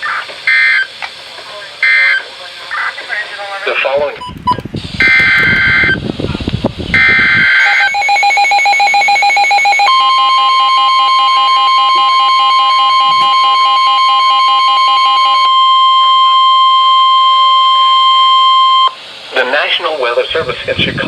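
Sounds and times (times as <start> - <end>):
steady warning alarm tone: 0.4 - 0.9, 1.8 - 2.9, 4.2 - 6.0, 7.0 - 19.0
rapid pulsing alarm beep: 1.8 - 2.2, 4.2 - 6.0, 7.0 - 19.0.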